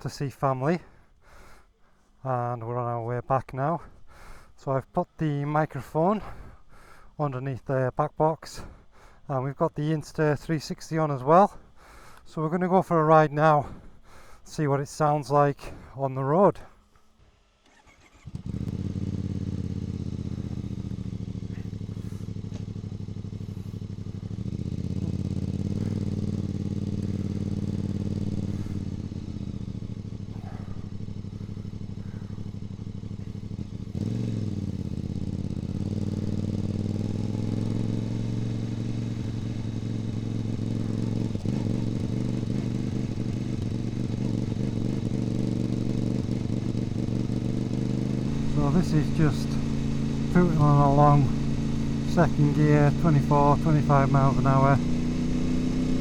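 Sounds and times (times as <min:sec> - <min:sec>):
motorcycle engine running: 0:17.3 - 0:56.0.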